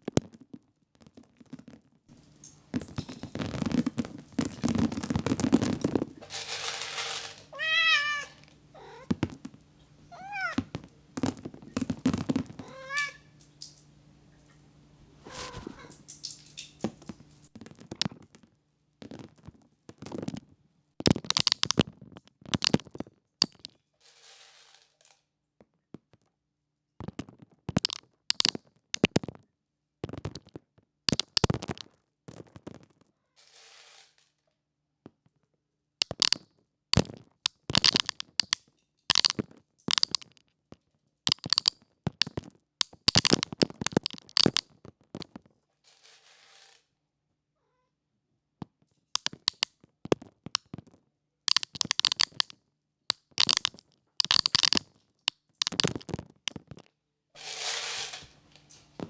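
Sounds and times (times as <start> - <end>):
chickens pecking corn: 2.2 - 17.5
rustling hisses: 12.6 - 17.5, 57.4 - 59.0.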